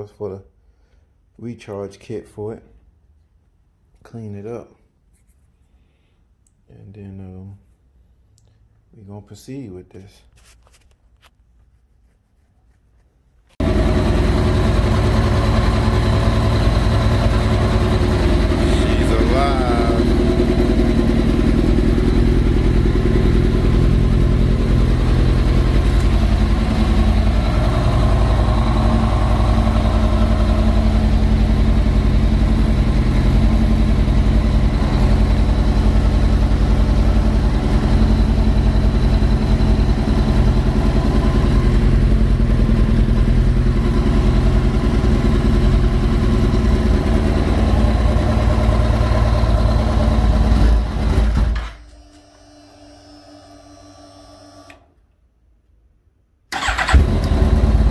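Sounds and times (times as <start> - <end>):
motorcycle engine idling: 13.6 - 51.4, 56.6 - 57.9.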